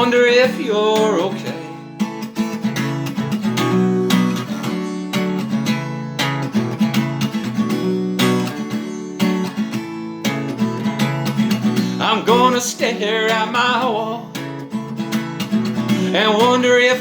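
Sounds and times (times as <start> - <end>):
person singing: 0.0 - 1.9, 11.8 - 14.4, 15.9 - 17.0
acoustic guitar strumming: 0.0 - 17.0.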